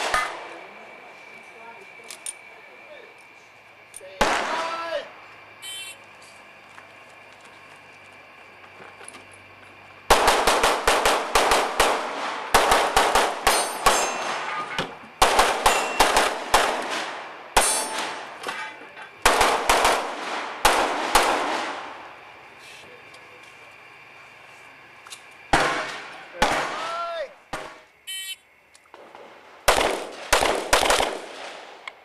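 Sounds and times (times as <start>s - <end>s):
rapid pistol fire: 4.2s - 4.8s, 10.1s - 14.5s, 15.2s - 18.3s, 19.2s - 21.9s, 25.5s - 26.8s, 29.6s - 31.8s.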